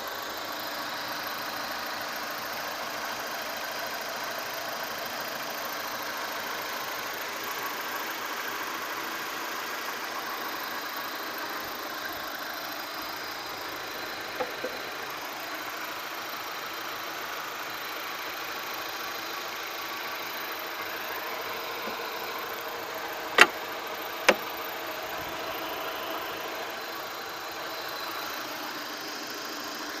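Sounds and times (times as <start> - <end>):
engine idling: 0.0 - 30.0
sharp clicks: 23.3 - 23.6.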